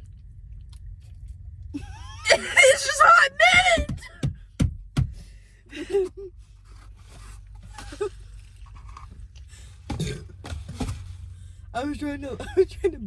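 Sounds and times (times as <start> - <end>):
person trying to burp: 9.9 - 10.4.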